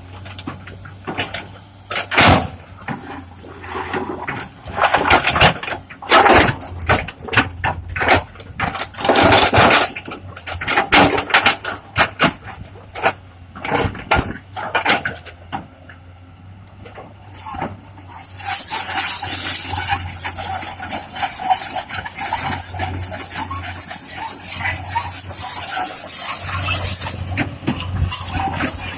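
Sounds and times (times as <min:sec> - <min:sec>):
high-pitched hiss with squealing: 0:18.1 - 0:28.9.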